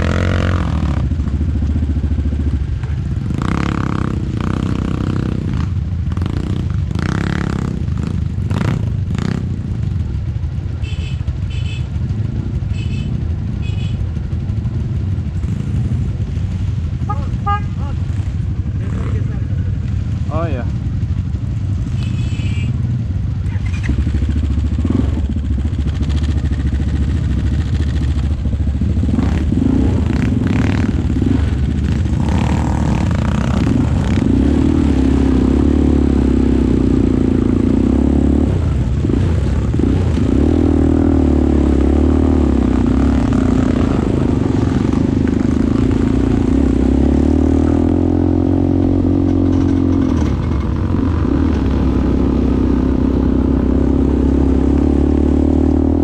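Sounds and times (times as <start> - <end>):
atv engine running: 0.0 - 56.0
clattering: 49.2 - 50.8.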